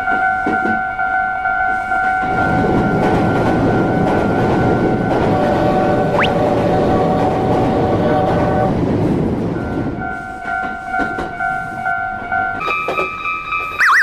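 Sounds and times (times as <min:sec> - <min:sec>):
train rumbling past: 0:00.0 - 0:13.8
rising whistle: 0:06.2 - 0:06.4, 0:13.8 - 0:14.0
level-crossing alarm dinging: 0:13.6 - 0:14.0.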